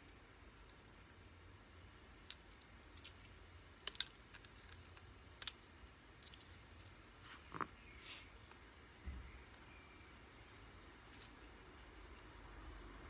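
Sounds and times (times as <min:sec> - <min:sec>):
clicks and taps of small gear: 0:02.2 - 0:06.6.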